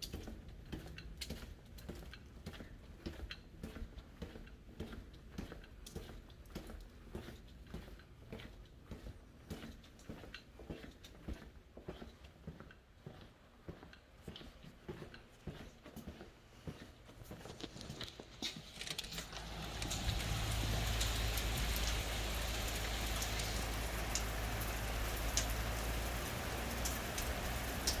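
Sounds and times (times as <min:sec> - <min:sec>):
rain falling: 0:19.0 - 0:28.0.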